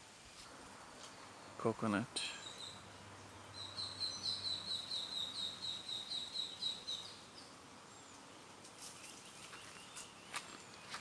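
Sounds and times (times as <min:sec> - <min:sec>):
faint outdoor background noise: 0:00.0 - 0:11.0
bird chirping rapidly: 0:02.3 - 0:07.6.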